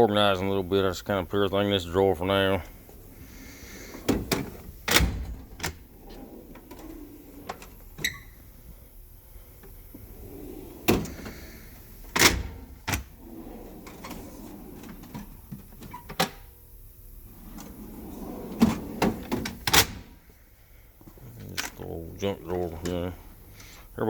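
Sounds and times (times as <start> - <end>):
tool chest drawers sliding: 3.3 - 8.4, 10.0 - 16.3, 17.4 - 20.1.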